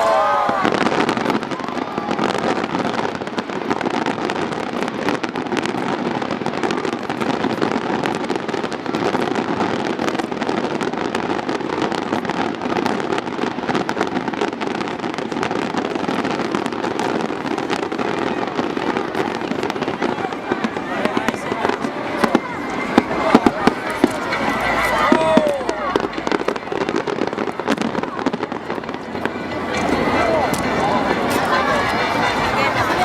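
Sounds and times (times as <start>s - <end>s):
fireworks crackling: 0.0s - 33.0s.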